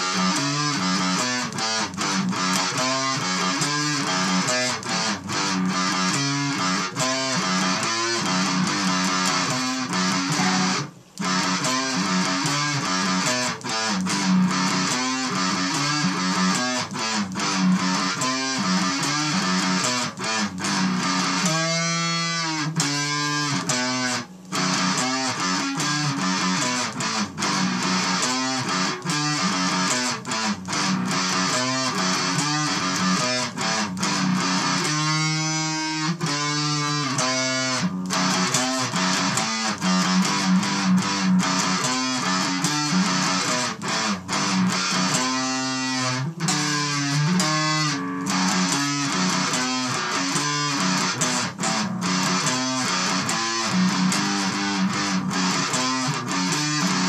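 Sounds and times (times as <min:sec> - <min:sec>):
distorted electric guitar: 0:00.0 - 0:57.0.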